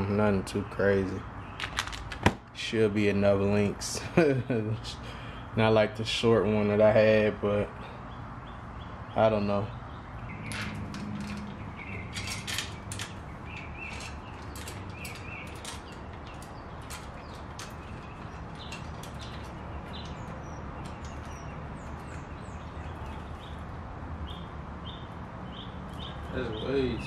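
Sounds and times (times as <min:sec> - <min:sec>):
birds chirping: 0:00.0 - 0:27.0
bicycle chain clicking and rattling: 0:10.3 - 0:23.8.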